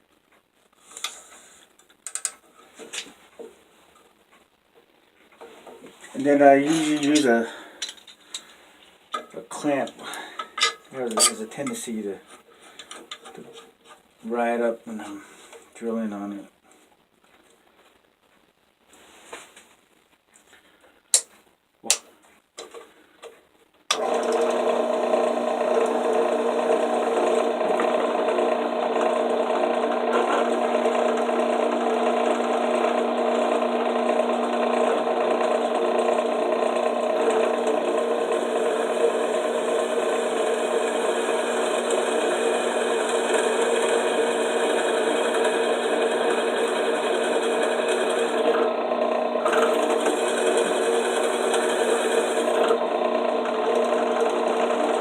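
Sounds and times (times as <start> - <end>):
drill press drilling steel: 10.4 - 11.4, 23.9 - 55.0.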